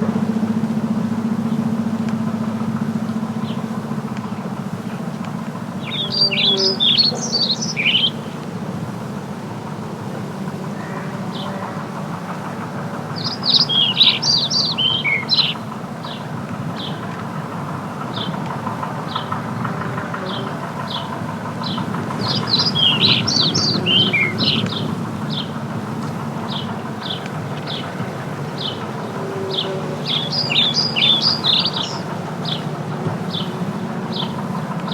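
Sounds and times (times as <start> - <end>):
steady low rumble: 0.0 - 6.2
songbird singing: 0.0 - 8.9, 10.6 - 34.9.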